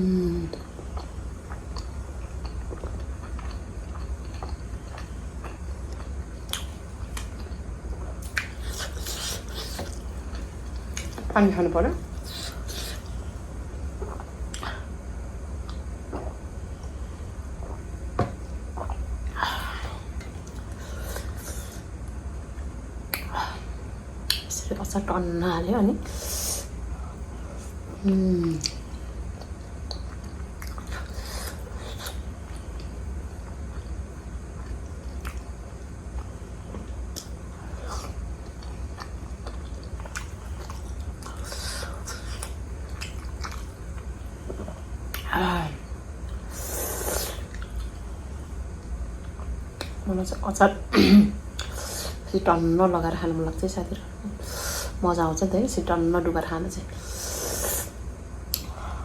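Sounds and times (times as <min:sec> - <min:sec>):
low steady hum: 0:00.0 - 0:59.0
wet chewing and squishing: 0:00.9 - 0:11.3, 0:28.6 - 0:33.0, 0:34.6 - 0:45.3, 0:47.1 - 0:48.1.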